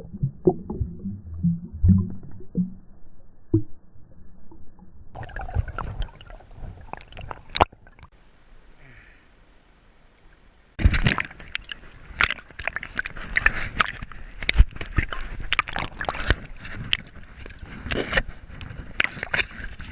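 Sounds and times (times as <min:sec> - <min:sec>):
water splashing and sloshing: 0:04.5 - 0:08.2, 0:10.2 - 0:19.9.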